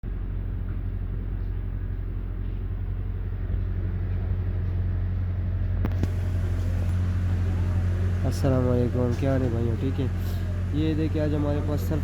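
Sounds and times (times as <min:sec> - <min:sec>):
car engine high idle: 0:04.5 - 0:12.0.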